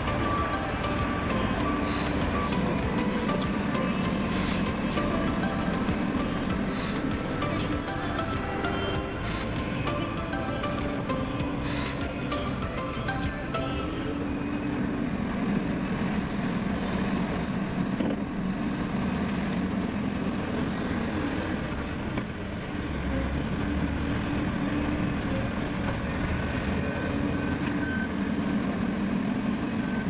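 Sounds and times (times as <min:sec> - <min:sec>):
backup alarm beeping: 0:00.0 - 0:14.0.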